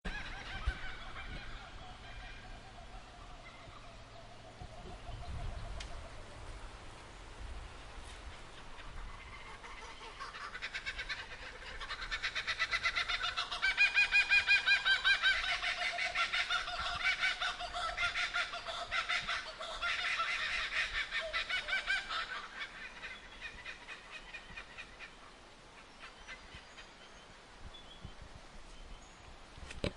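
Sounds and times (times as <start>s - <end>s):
kookaburras laughing: 0.1s - 3.1s, 8.8s - 25.0s.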